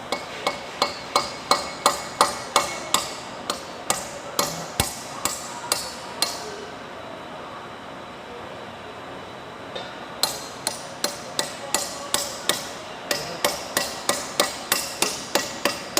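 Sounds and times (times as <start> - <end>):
hammer tapping on metal: 0.1 - 6.4, 10.2 - 15.9.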